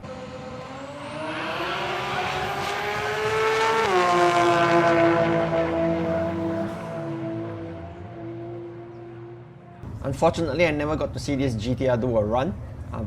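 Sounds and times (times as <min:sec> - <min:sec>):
drag car engine accelerating: 0:00.0 - 0:09.8.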